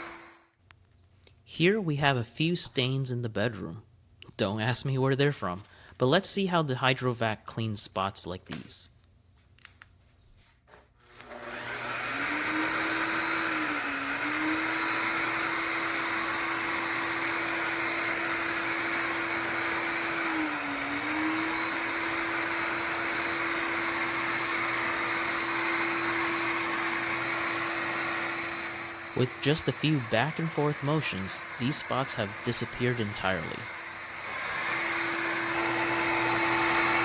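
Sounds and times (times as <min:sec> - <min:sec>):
vacuum mop motor hum: 0:00.0 - 0:00.5, 0:11.1 - 0:37.0.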